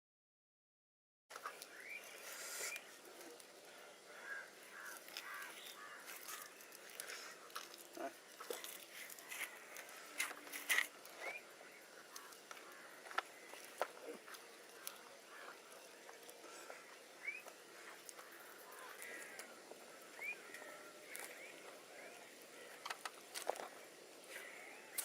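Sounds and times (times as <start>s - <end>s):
birds chirping: 1.3s - 25.0s.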